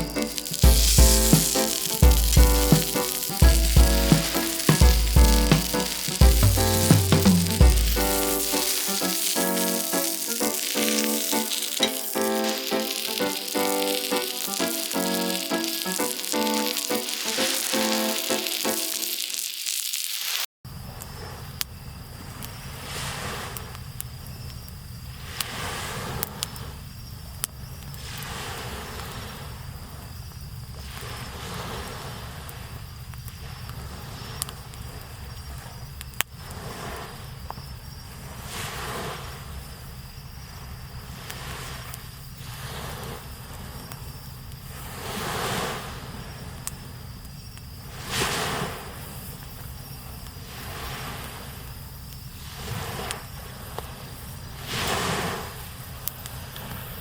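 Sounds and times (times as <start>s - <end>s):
small waves washing onto sand: 0.0s - 20.4s, 44.8s - 46.1s, 54.6s - 56.9s
campfire popping: 0.0s - 20.5s
insects chirping: 0.0s - 57.0s.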